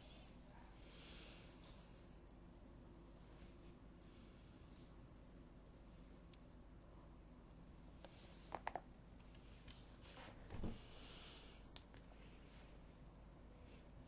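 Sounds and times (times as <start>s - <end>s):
faint clicks: 1.4s - 9.8s.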